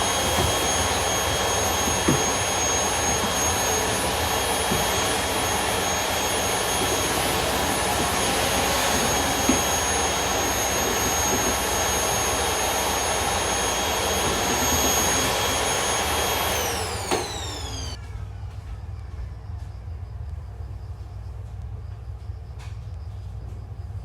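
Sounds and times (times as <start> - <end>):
vacuum cleaner running: 0.0 - 18.0.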